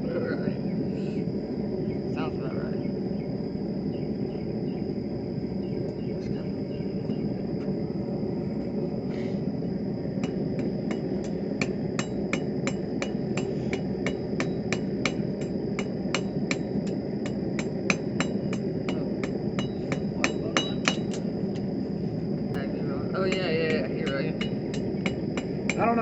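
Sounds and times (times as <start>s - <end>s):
low rushing noise: 0.7s - 23.1s
hammer ringing on anvil: 17.9s - 21.2s.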